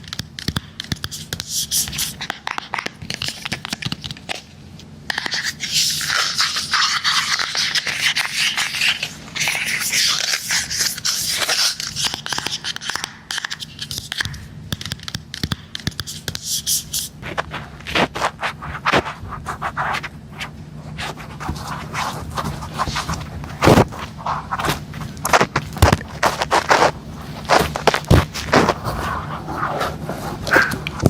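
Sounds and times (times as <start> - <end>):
scratching near microphone: 5.1 - 31.0
quick sharp taps: 12.0 - 16.5.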